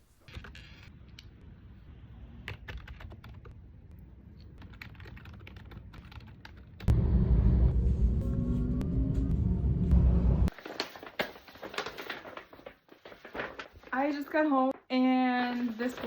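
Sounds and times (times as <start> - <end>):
low hum: 6.8 - 10.8
loud low rumble: 6.9 - 10.6.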